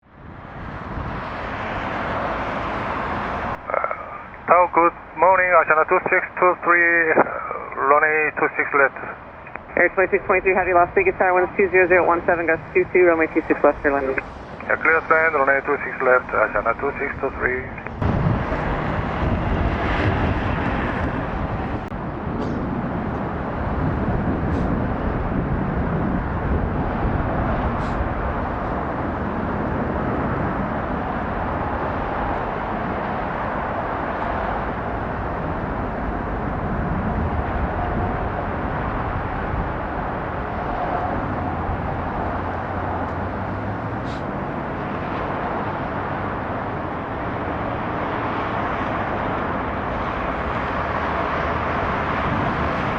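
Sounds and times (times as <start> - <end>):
wind buffeting microphone: 0.1 - 3.6, 17.7 - 52.9
jet engines rushing: 0.2 - 52.9.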